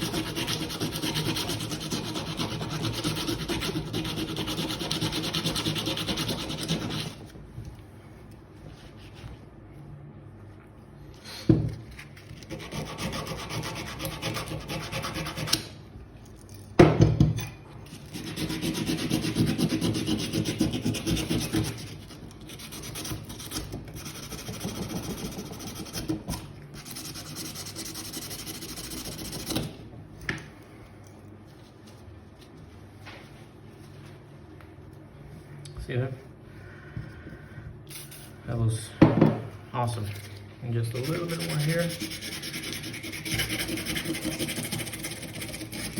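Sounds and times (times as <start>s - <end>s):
sandpaper rasping on rusty metal: 0.0s - 7.2s, 12.5s - 15.6s, 18.1s - 26.1s, 40.9s - 45.9s.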